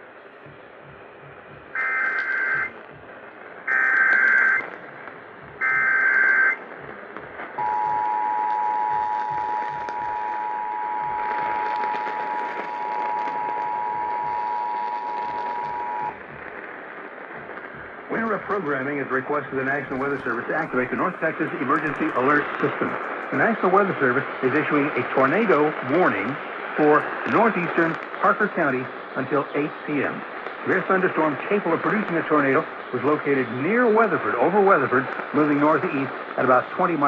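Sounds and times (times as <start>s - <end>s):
radio background hiss: 0.0s - 37.0s
two-tone attention signal: 7.6s - 16.2s.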